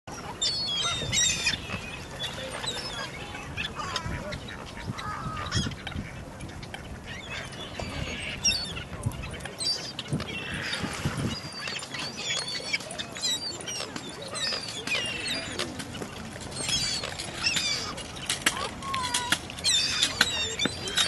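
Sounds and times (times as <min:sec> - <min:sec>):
ducks and waterfowl calling: 0:00.1 - 0:21.0.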